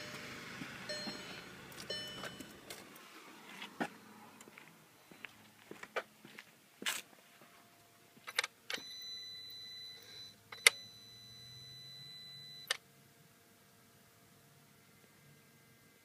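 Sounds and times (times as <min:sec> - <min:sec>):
steady high beep: 0:00.9 - 0:02.6, 0:05.0 - 0:05.4, 0:08.8 - 0:12.7.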